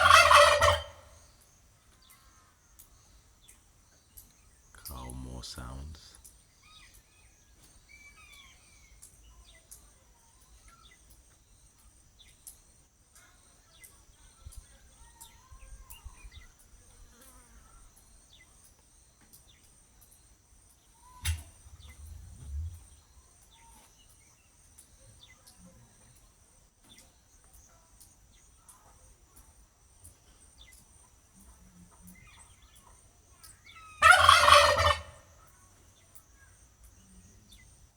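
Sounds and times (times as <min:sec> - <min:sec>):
turkey gobbling: 0:00.0 - 0:01.2, 0:21.0 - 0:22.8, 0:33.7 - 0:35.6
bird chirps: 0:00.7 - 0:12.7, 0:17.7 - 0:28.9.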